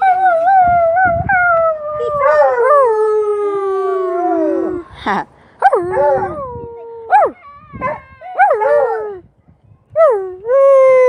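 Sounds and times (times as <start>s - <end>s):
dog howling: 0.0s - 4.8s, 5.6s - 9.2s.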